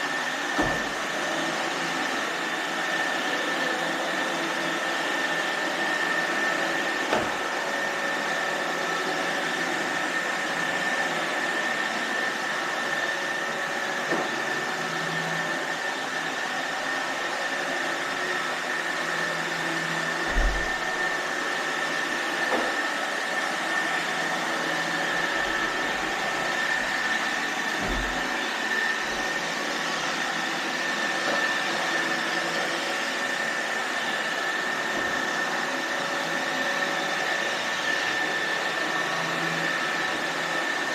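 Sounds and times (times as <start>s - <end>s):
robot vacuum running: 0.0s - 40.9s.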